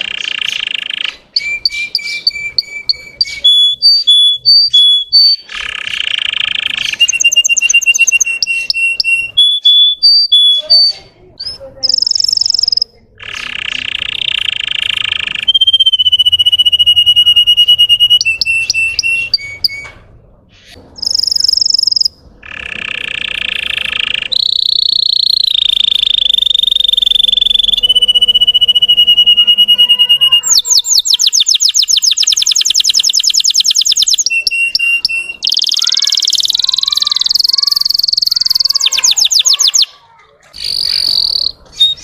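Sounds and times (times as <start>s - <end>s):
canary singing trills: 0.0s - 42.0s.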